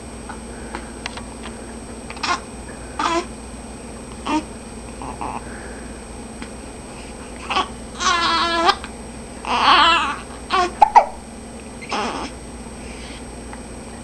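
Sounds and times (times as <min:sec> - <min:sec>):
pitched cries: 0:07.4 - 0:08.8, 0:09.4 - 0:11.0, 0:11.8 - 0:12.4
person hiccuping: 0:10.6 - 0:11.2.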